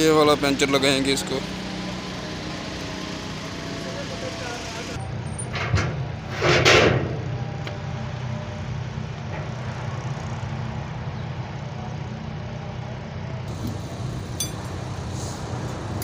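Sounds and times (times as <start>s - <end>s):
motor humming: 0.4s - 5.0s, 13.5s - 16.0s
loud burst of hiss: 13.5s - 16.0s.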